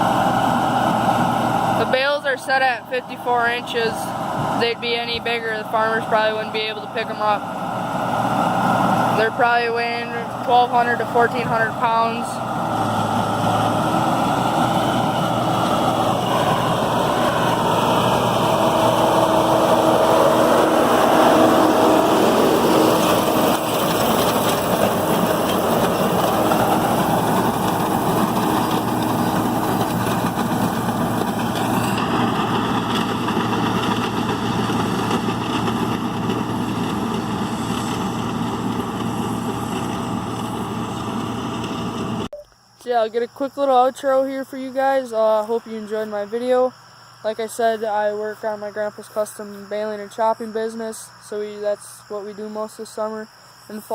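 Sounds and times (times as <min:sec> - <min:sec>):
round baler clattering and whirring: 0:00.0 - 0:42.3
tractor diesel engine running: 0:00.0 - 0:42.3.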